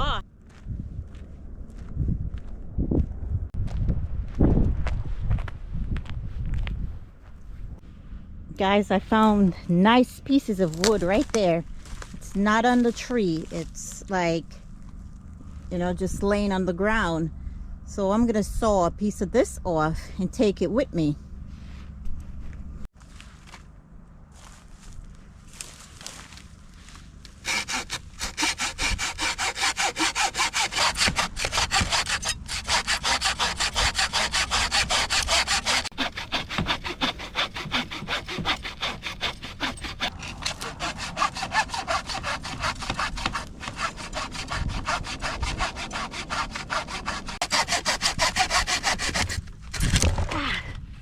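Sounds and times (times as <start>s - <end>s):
hand saw cutting wood: 9.1s - 14.2s, 27.3s - 50.1s.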